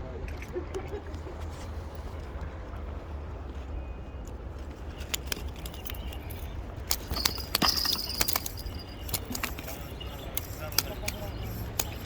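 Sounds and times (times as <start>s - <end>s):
sharp clicks and knocks: 5.0s - 12.0s.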